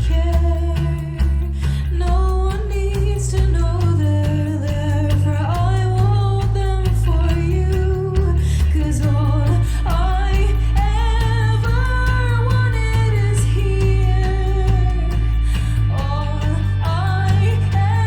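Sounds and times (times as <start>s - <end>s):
bass: 0.0s - 18.0s
guitar: 0.0s - 18.0s
person singing: 0.0s - 18.0s.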